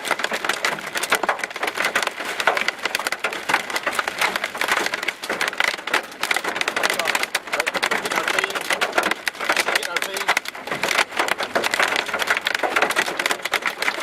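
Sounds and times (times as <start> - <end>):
hail pelting a vehicle: 0.0 - 14.0.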